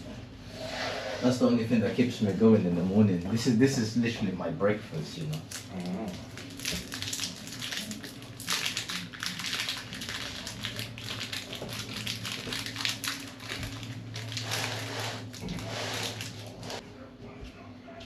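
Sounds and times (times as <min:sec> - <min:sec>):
rustling and crinkling: 0:05.2 - 0:16.8.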